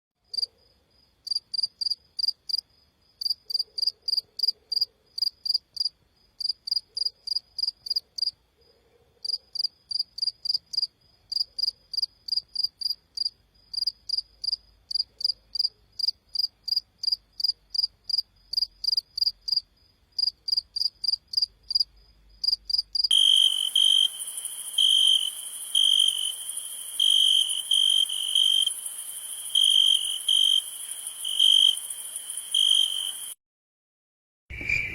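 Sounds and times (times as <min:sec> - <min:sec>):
crickets chirping: 0:00.3 - 0:33.4
low cricket trill in bursts: 0:09.3 - 0:33.4
high hiss: 0:23.1 - 0:33.4.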